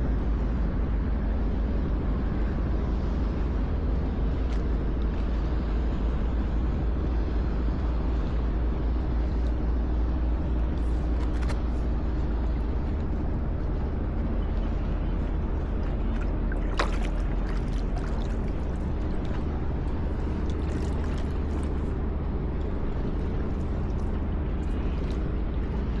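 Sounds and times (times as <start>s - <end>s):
ship machinery rumble and hum: 0.0s - 26.0s
light water splashes: 14.4s - 26.0s.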